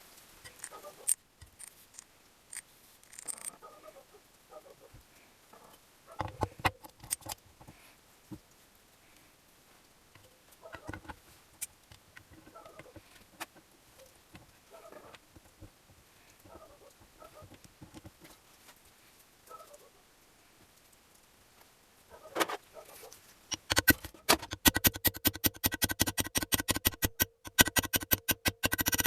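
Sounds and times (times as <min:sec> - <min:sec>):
engine parts clicking and knocking: 0:06.2 - 0:07.8, 0:10.2 - 0:13.7, 0:23.5 - 0:29.0.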